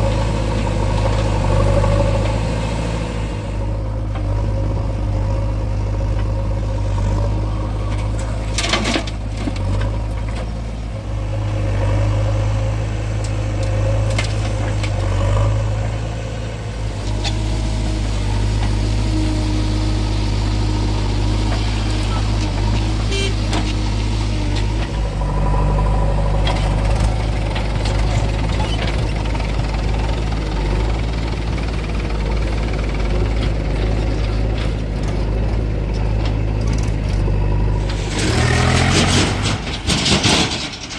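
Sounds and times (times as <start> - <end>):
diesel engines running: 0.0 - 40.9.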